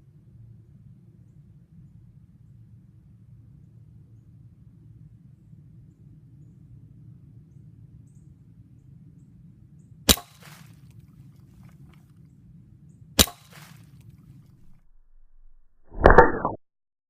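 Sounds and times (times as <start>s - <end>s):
air pistol shots: 10.1s - 10.7s, 13.2s - 13.8s.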